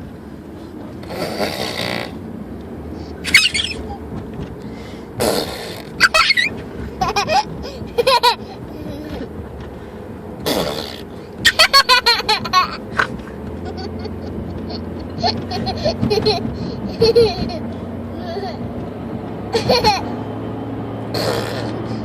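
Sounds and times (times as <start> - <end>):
child making fart noises: 1.1 - 2.2, 5.2 - 5.9, 10.4 - 11.0, 21.1 - 21.8
child giggling and squealing: 3.2 - 4.0, 6.0 - 9.3, 11.4 - 18.7, 19.5 - 20.2.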